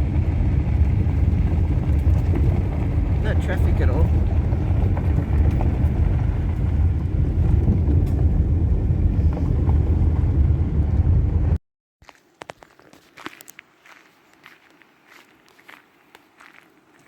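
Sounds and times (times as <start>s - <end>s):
car road noise rumble: 0.0s - 11.6s.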